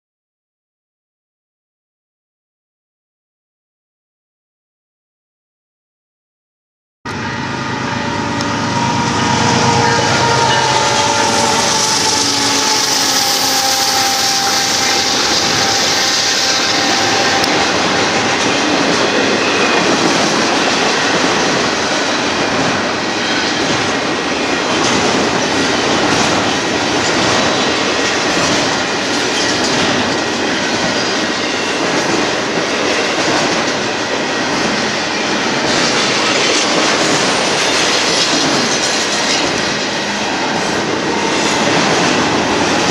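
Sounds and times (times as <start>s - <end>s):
pitched drone falling: 7.1s - 20.5s
train wheels rumbling on rails: 7.1s - 42.9s.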